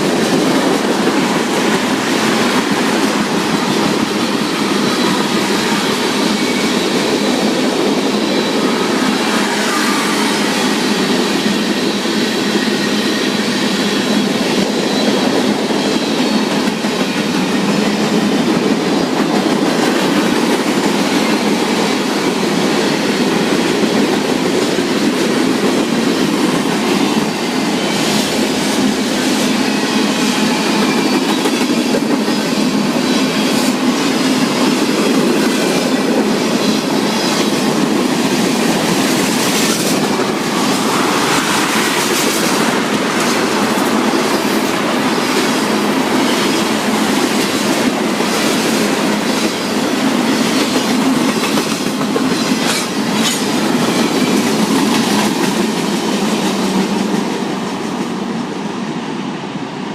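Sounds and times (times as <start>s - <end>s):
train wheels rumbling on rail: 0.0s - 59.9s.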